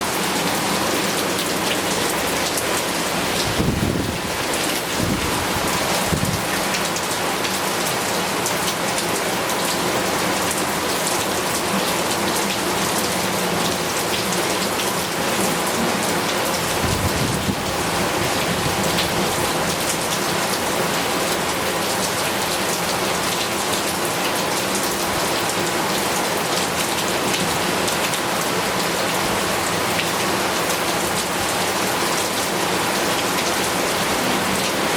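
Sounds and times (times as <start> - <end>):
heavy rain falling: 0.0 - 34.9.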